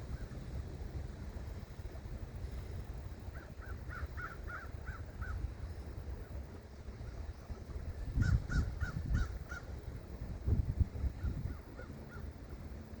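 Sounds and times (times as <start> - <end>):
steady low rumble: 0.0 - 13.0
bird harsh caw-like calls: 3.3 - 5.4, 8.2 - 9.7.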